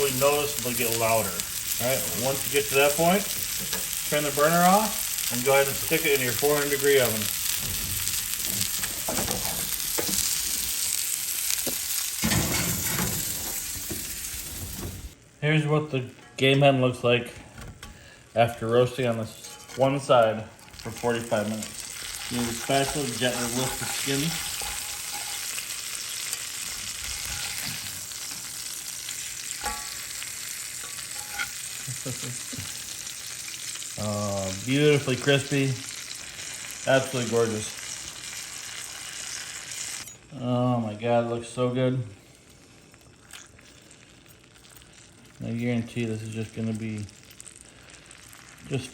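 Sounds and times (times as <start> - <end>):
poultry skin sizzling in a pan: 0.0 - 15.3, 18.3 - 40.2, 40.8 - 48.9
spatula scraping a pan: 19.2 - 28.3, 29.5 - 31.7.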